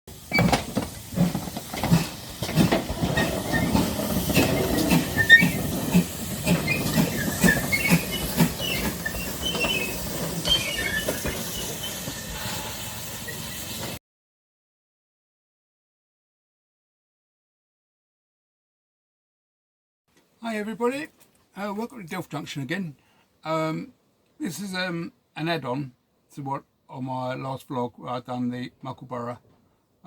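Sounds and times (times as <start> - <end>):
train running past: 0.8 - 14.0
high squeaks: 3.2 - 5.7, 6.5 - 13.7.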